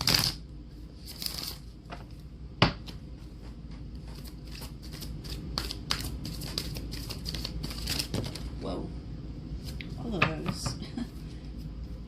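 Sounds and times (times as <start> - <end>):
cards being shuffled: 0.0 - 0.4, 1.0 - 2.2, 4.0 - 8.5.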